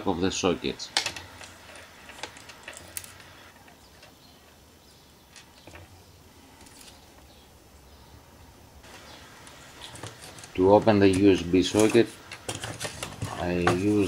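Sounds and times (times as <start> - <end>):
small objects clicking and tapping: 1.0 - 4.6.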